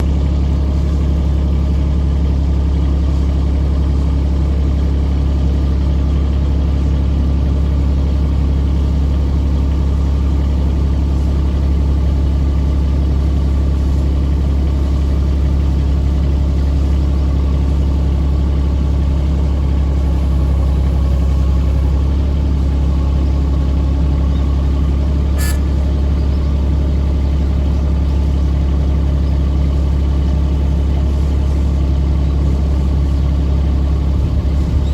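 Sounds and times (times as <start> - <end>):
excavator diesel engine humming: 0.0 - 34.9.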